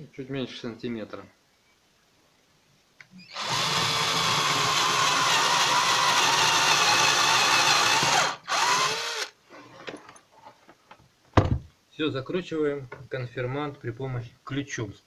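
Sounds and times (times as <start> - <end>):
cordless drill running: 3.3 - 9.4.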